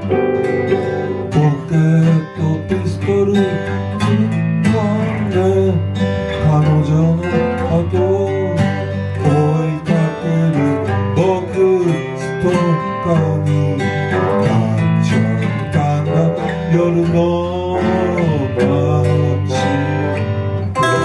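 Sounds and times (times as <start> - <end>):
band playing a song: 0.0 - 2.0
guitar strummed and picked: 0.0 - 21.0.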